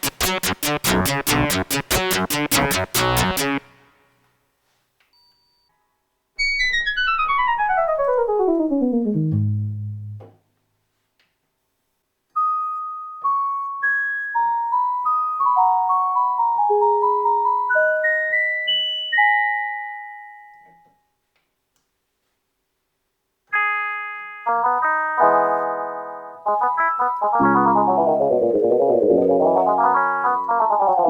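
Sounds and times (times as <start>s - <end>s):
fuller synthesizer sound: 6.4s - 10.3s, 27.4s - 31.0s
synthesizer melody: 6.4s - 10.3s, 16.2s - 18.9s, 26.5s - 31.0s.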